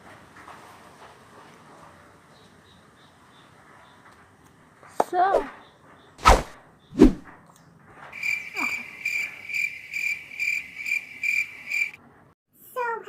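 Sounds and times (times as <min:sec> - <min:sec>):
cricket chirping: 0:08.2 - 0:12.0.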